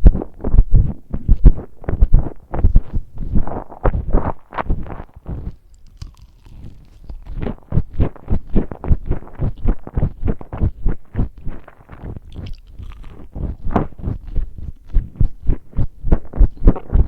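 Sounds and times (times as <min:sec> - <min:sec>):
person chewing crunchy food: 0:01.4 - 0:17.0.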